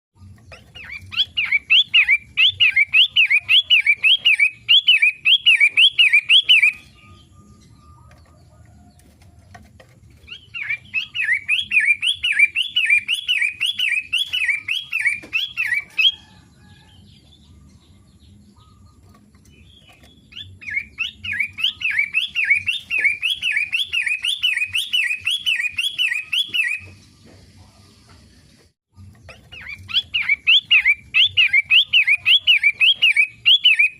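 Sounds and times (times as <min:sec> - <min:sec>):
bird singing: 0:00.2 - 0:33.9.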